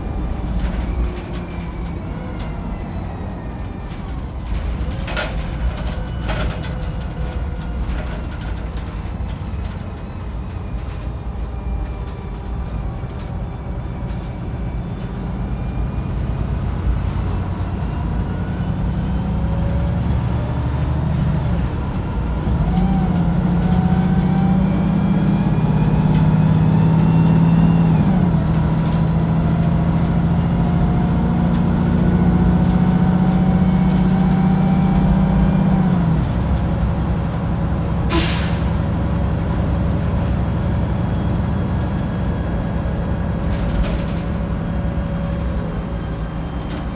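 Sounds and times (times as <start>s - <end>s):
bus diesel engine whining: 0.0s - 46.9s.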